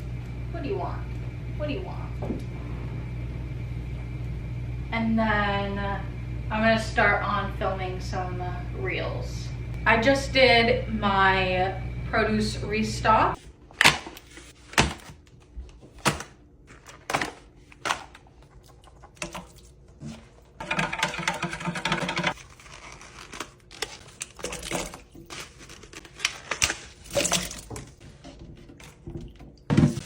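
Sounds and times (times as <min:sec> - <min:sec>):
objects knocking and clicking: 0:20.6 - 0:22.4
crinkling packaging: 0:22.4 - 0:27.9.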